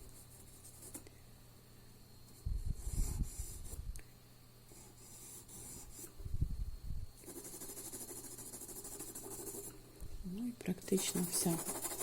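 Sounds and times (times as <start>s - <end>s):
pencil scratching on paper: 4.7s - 6.1s, 7.2s - 9.7s, 10.9s - 12.0s.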